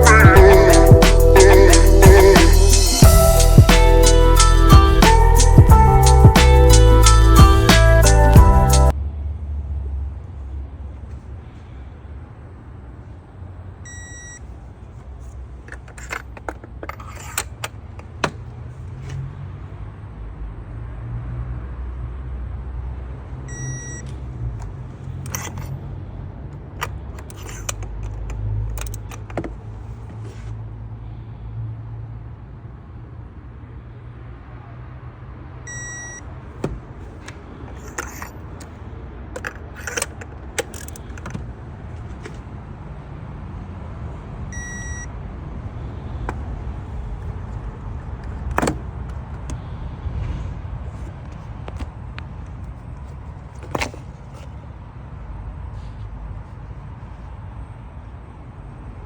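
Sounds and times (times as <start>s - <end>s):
low engine rumble: 0.0s - 9.0s
metallic clicks and jingles: 25.2s - 25.8s, 26.8s - 29.4s, 37.7s - 38.8s, 39.4s - 41.4s
short electronic beep: 35.7s - 36.2s, 44.6s - 45.1s.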